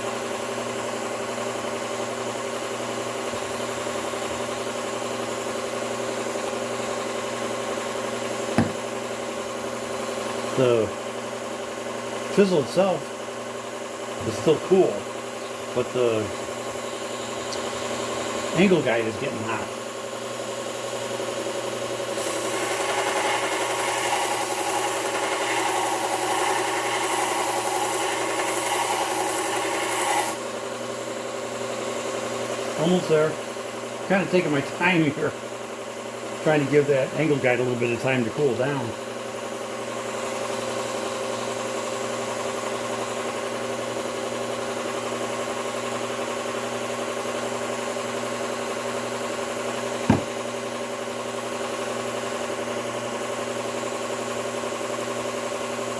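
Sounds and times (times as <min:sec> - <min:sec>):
belt sharpener humming: 0:00.0 - 0:10.7, 0:49.6 - 0:52.3
sharp knock: 0:08.5 - 0:08.9, 0:50.0 - 0:50.4
belt sharpener grinding chisel: 0:22.2 - 0:30.4.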